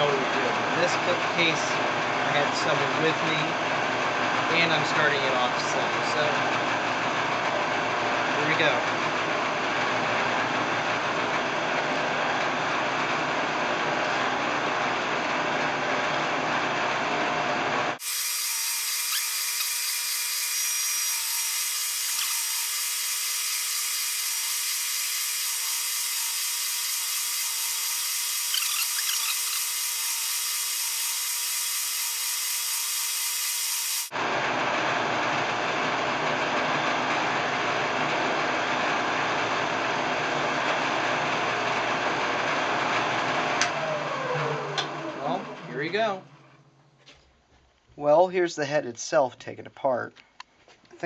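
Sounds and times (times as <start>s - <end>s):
electric buffing wheel running: 18.0s - 34.2s.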